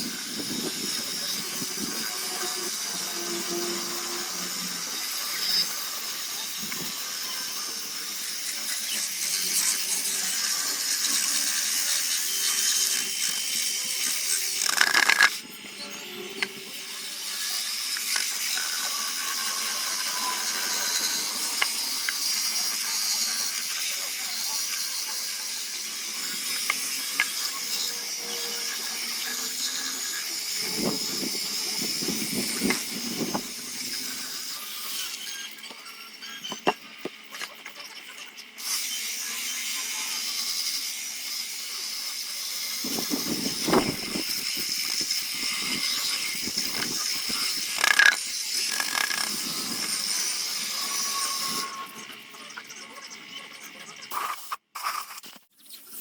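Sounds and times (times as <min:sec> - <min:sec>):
power tool hissing on wood: 0:00.0 - 0:35.0, 0:38.6 - 0:51.9.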